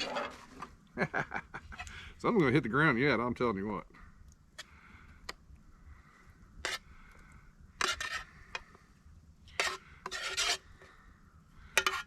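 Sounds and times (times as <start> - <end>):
utensil scraping frying pan: 0.0 - 0.6, 6.6 - 6.8, 7.8 - 8.3, 9.5 - 10.7, 11.8 - 12.0.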